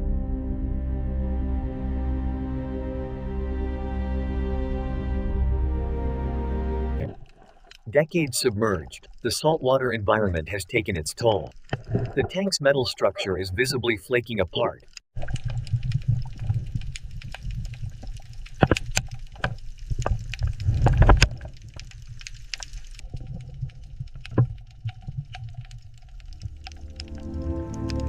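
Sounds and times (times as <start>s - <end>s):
music: 0.0s - 7.0s, 26.6s - 28.0s
sharp clicks and pops: 7.0s - 13.1s, 13.7s - 28.0s
water bubbling and gurgling: 7.0s - 28.0s
low underwater rumble: 15.2s - 28.0s.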